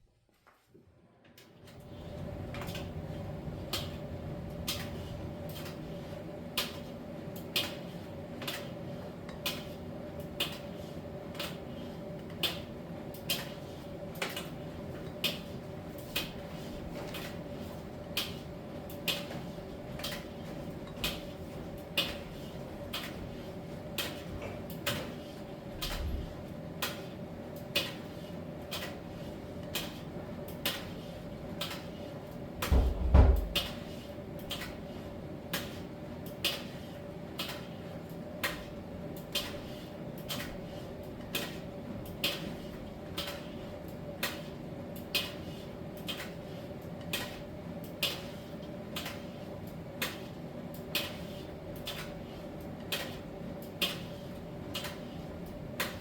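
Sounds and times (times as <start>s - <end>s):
heavy thump in dryer: 32.6s - 33.8s.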